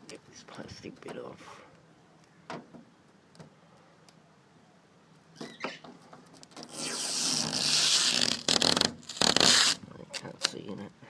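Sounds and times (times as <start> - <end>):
plastic film tearing: 6.5 - 10.6.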